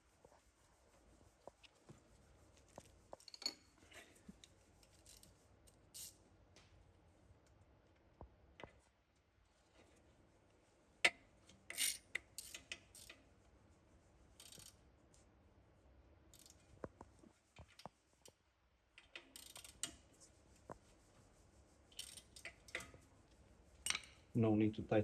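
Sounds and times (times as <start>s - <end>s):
cable tie ratcheting clicks: 16.4s - 16.6s, 19.0s - 20.0s.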